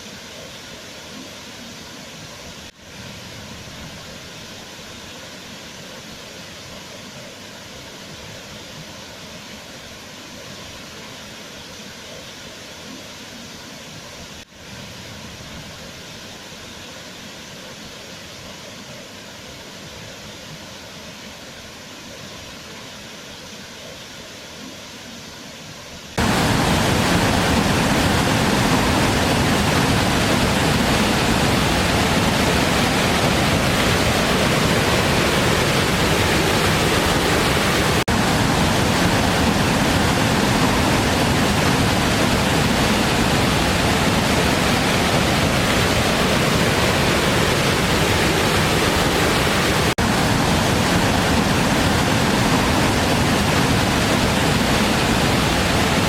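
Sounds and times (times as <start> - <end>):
waterfall rushing: 26.2 - 56.0.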